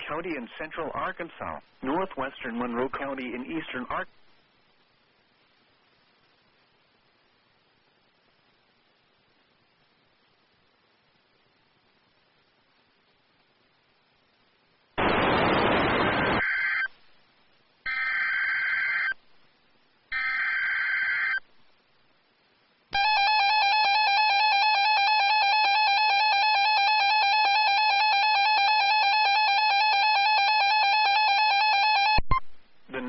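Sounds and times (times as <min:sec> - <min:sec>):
screeching data tone bursts: 0:15.0 - 0:16.9, 0:20.1 - 0:21.4
buzzy two-tone alarm: 0:20.1 - 0:21.4, 0:23.0 - 0:32.4.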